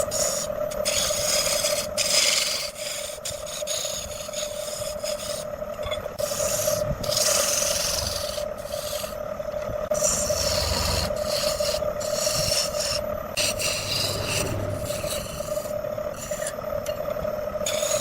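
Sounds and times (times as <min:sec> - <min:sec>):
turning tool scraping wood: 0:10.0 - 0:16.6
wood lathe humming: 0:12.1 - 0:16.5.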